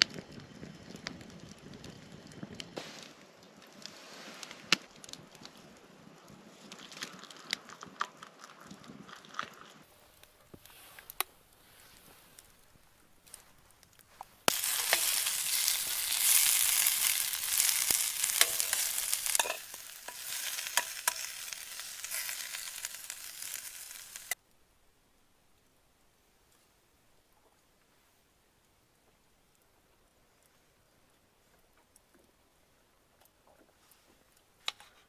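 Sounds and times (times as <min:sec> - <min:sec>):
food sizzling in a pan: 0:09.9 - 0:24.4.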